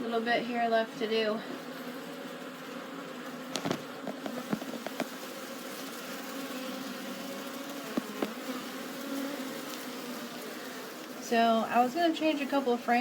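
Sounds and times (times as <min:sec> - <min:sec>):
honey bees buzzing: 0:00.0 - 0:13.0.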